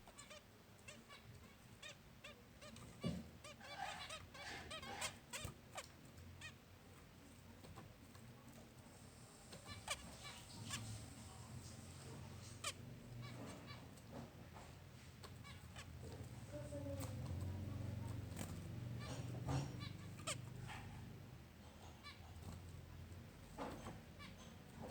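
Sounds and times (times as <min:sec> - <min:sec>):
finches honking calls: 0:00.0 - 0:05.8, 0:12.0 - 0:14.4, 0:15.2 - 0:23.1.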